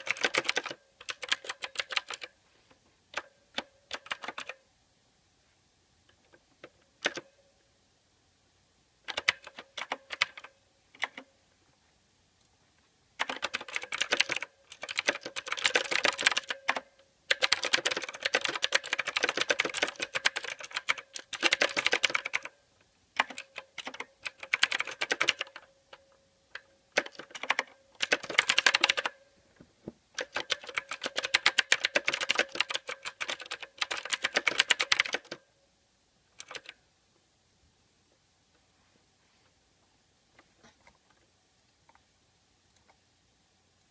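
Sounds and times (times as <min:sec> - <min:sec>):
mechanical keyboard typing: 0:00.0 - 0:02.4, 0:03.1 - 0:04.6, 0:06.1 - 0:07.4, 0:09.0 - 0:11.3, 0:13.2 - 0:29.2, 0:30.1 - 0:35.5, 0:36.4 - 0:36.8.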